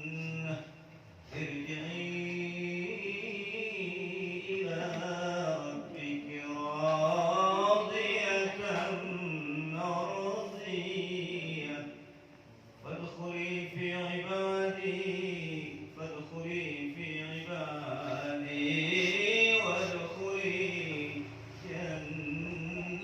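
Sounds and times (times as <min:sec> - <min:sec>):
man chanting melodically: 0:12.8 - 0:23.0.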